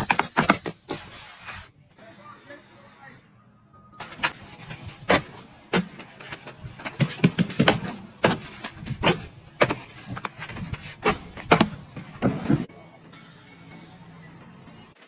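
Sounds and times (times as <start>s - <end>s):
sharp knocks and clatters: 4.3s - 12.7s.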